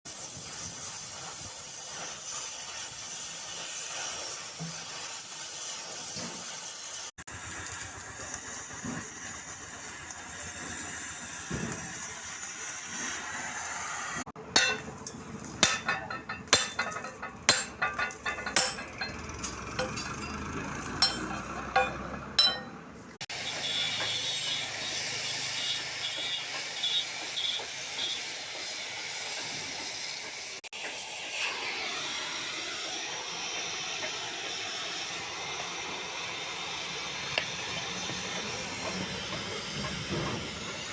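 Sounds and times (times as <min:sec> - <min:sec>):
gas cutting torch hissing: 0:00.1 - 0:14.3, 0:23.3 - 0:40.9
metallic clinks and knocks: 0:14.6 - 0:22.8.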